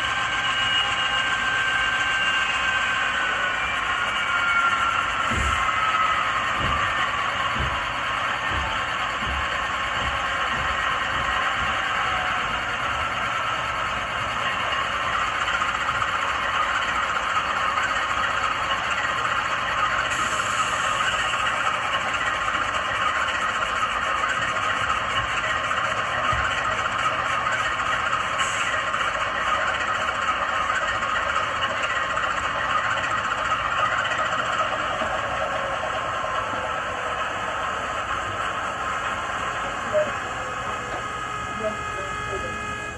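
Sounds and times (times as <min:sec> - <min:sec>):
diesel locomotive engine running: 0:00.0 - 0:42.9
high hiss: 0:20.1 - 0:21.5.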